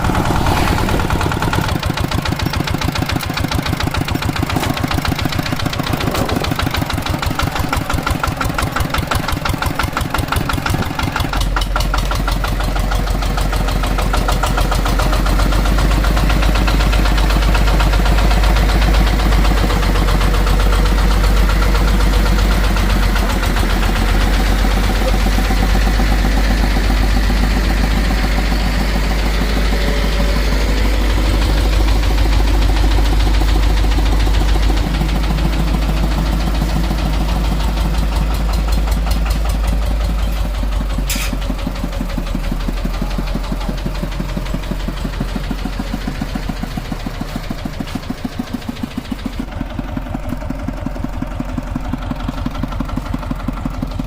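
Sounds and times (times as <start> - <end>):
diesel engine knocking: 0.0 - 54.0
deep low rumble: 5.2 - 8.3.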